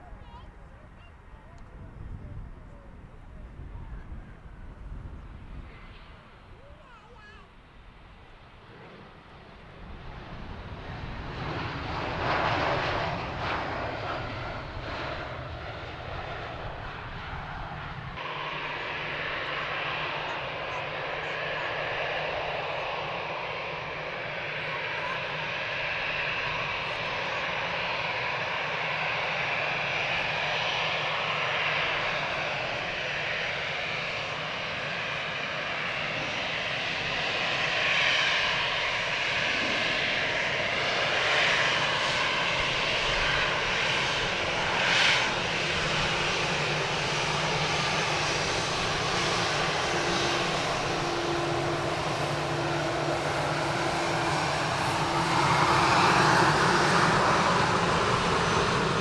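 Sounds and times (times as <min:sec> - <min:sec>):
jet engines running: 0:00.0 - 0:59.0.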